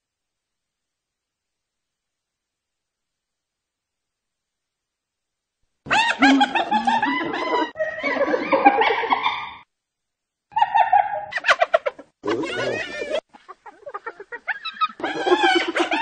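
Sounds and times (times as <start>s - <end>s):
hyena giggling: 5.9s - 9.6s, 10.6s - 16.0s.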